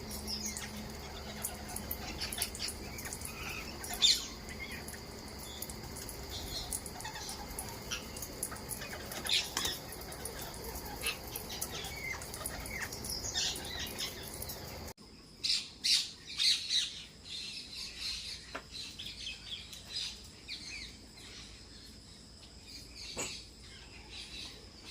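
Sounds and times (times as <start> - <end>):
outdoor background noise: 0.0 - 24.9
parrots squawking and chirping: 0.2 - 5.0, 5.6 - 14.8.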